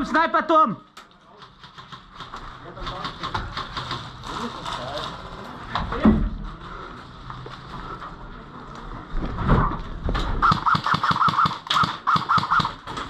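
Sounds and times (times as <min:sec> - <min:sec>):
airsoft gun rapid firing: 0:10.4 - 0:12.9.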